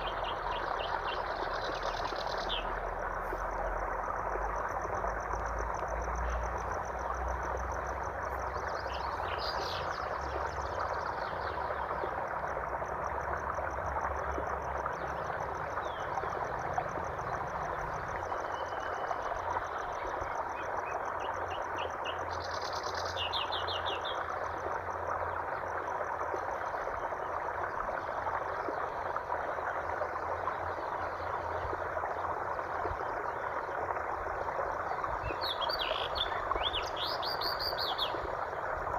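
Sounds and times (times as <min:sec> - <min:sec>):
flowing water: 0:00.0 - 0:38.9
birds chirping: 0:35.3 - 0:38.2.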